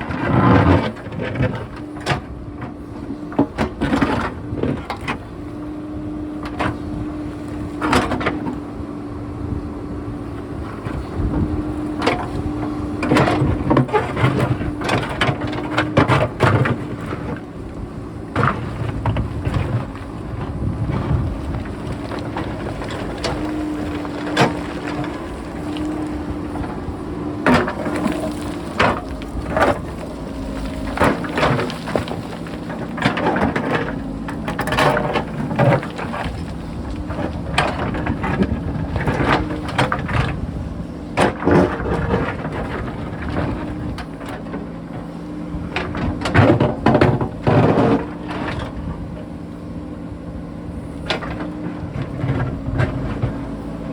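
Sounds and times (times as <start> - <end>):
diesel engine running under load: 0.0 - 53.9
rocks knocking and clattering: 18.2 - 40.4.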